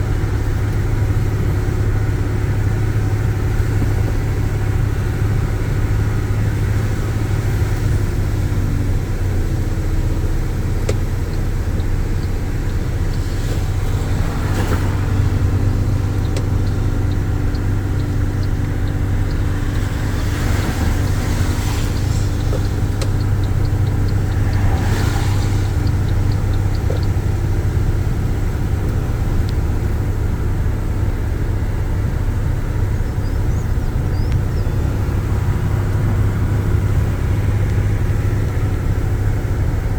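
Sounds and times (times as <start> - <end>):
car engine and road hum: 0.0 - 39.9
rushes of noise: 18.4 - 28.0.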